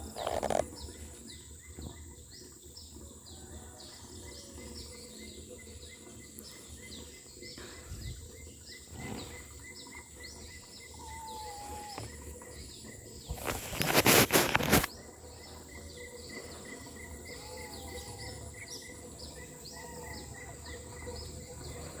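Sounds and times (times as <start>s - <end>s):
high chirps of small animals: 9.8s - 13.7s, 17.1s - 21.5s.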